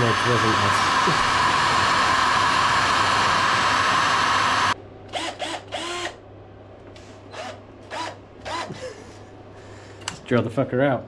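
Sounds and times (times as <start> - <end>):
power tool whining: 0.0 - 6.2, 7.3 - 9.0.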